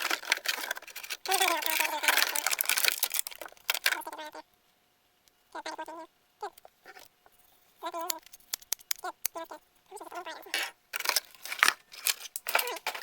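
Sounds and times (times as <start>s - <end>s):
plastic toy pieces clicking: 0.0s - 4.1s, 7.8s - 9.4s, 10.5s - 13.0s
high-pitched voice: 1.3s - 2.7s, 3.8s - 4.5s, 5.6s - 6.6s, 7.8s - 8.2s, 9.0s - 10.7s, 12.5s - 13.0s.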